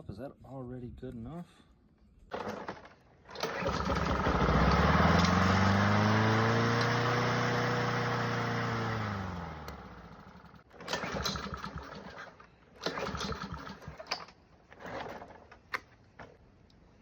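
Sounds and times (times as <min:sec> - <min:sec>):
lawnmower engine running: 0:02.3 - 0:14.0
recoil starter pulls: 0:02.3 - 0:15.8.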